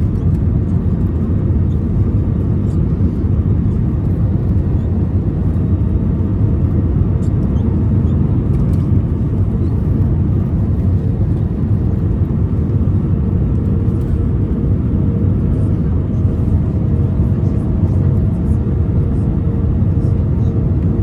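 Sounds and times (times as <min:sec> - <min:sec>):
airplane cabin rumble: 0:00.0 - 0:21.0.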